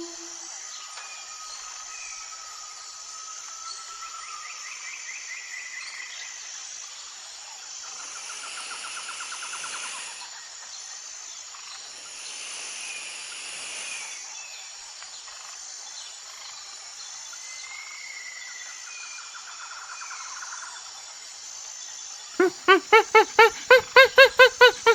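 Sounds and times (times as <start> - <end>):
insects chirping: 22.4 - 24.9.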